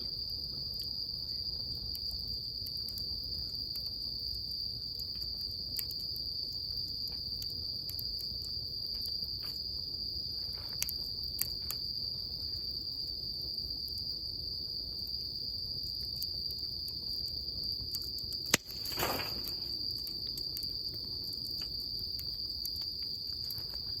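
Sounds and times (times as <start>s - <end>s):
bonfire crackling: 0.0s - 24.0s
insect chorus trilling: 3.2s - 24.0s
sharp crack: 18.4s - 20.2s.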